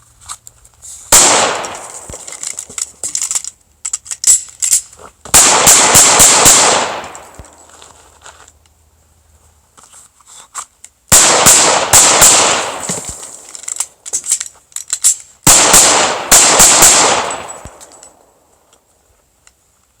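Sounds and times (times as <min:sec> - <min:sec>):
pistol shots echoing: 0:01.1 - 0:02.2, 0:05.3 - 0:07.6, 0:11.1 - 0:13.4, 0:15.4 - 0:18.4.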